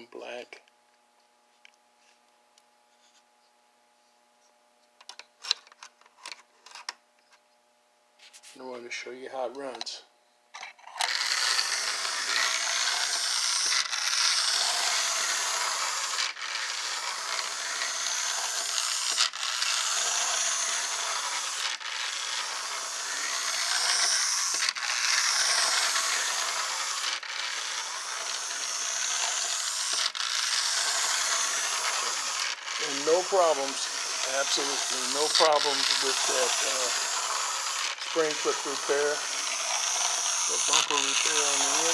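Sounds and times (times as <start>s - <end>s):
toy trolley whirring and rattling: 10.6s - 41.9s.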